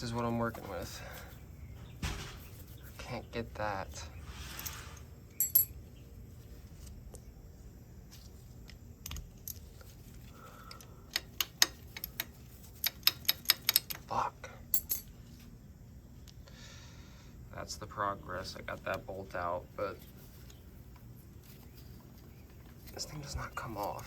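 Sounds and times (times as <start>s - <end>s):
hand tools clinking on metal: 5.4s - 5.8s, 14.7s - 15.1s.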